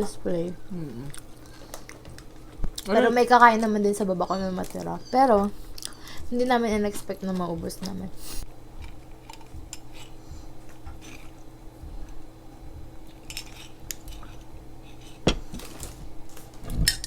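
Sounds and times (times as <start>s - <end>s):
faint steady hum: 0.0s - 17.0s
plates and utensils clinking: 13.1s - 16.0s.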